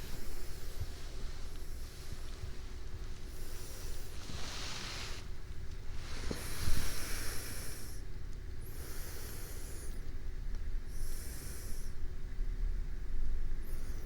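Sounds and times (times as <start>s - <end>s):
slow breathing of sleeping person: 0.0s - 12.2s, 13.6s - 14.0s.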